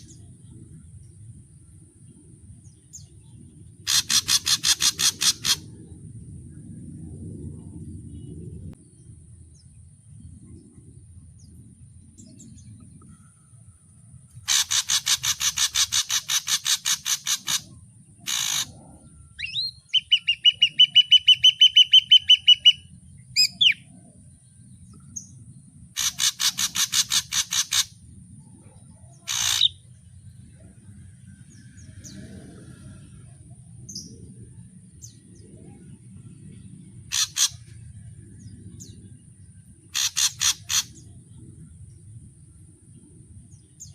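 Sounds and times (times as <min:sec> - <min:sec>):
bird rattle of harsh rasping notes: 0:03.9 - 0:05.6, 0:14.4 - 0:18.7, 0:26.0 - 0:28.0, 0:29.3 - 0:29.7, 0:37.1 - 0:37.6, 0:39.9 - 0:41.0
bird single harsh calls: 0:03.9 - 0:05.6, 0:14.4 - 0:18.8, 0:19.4 - 0:23.8, 0:26.0 - 0:27.9, 0:29.2 - 0:29.8, 0:37.1 - 0:37.7, 0:39.9 - 0:41.0
bird clear whistled notes: 0:19.4 - 0:23.9.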